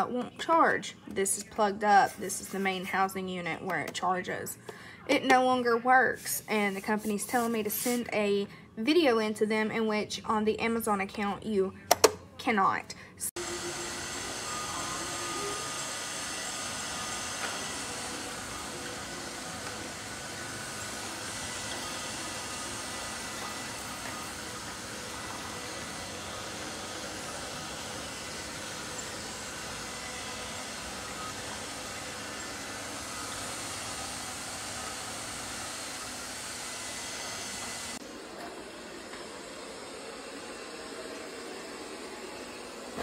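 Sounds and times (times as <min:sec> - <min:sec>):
robot vacuum whirring: 0:13.4 - 0:43.0.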